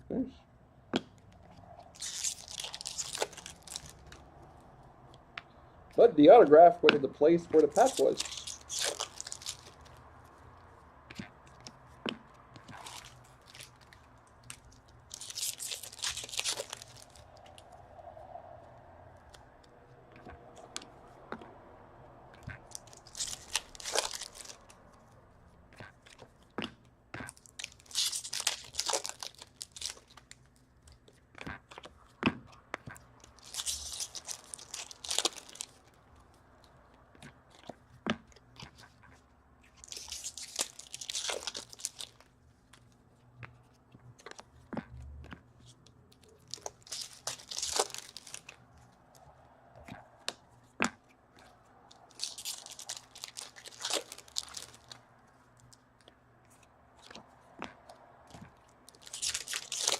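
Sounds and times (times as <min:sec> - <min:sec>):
foil packs tearing and crinkling: 0:01.9 - 0:04.0, 0:07.5 - 0:09.9, 0:15.0 - 0:17.3, 0:22.7 - 0:24.7, 0:27.3 - 0:30.4, 0:33.3 - 0:35.8, 0:39.8 - 0:42.2, 0:46.4 - 0:48.6, 0:52.0 - 0:55.0, 0:58.9 - 0:59.9.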